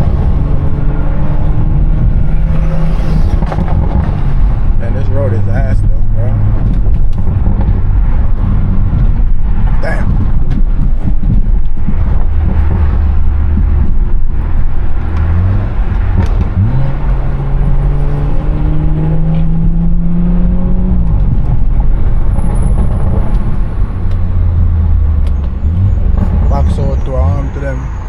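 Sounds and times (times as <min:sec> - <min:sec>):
car engine revving with loud exhaust: 0:00.0 - 0:28.0.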